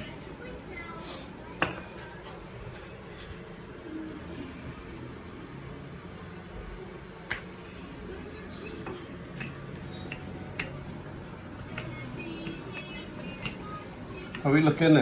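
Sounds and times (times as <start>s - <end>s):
rolling pin rolling dough: 6.4s - 15.0s.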